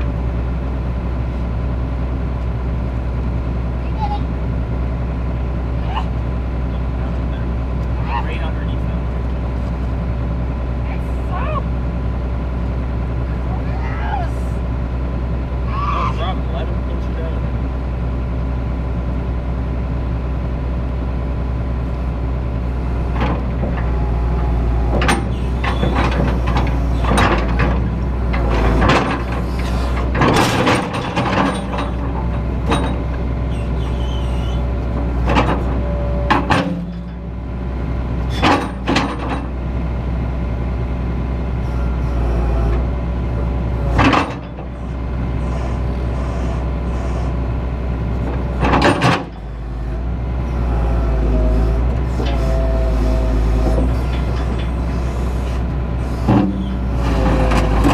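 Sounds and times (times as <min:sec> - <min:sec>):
excavator engine running: 0:00.0 - 0:57.9
clunks and knocks: 0:22.9 - 0:37.4, 0:38.2 - 0:39.6, 0:43.8 - 0:46.9, 0:48.1 - 0:50.2, 0:50.9 - 0:57.9.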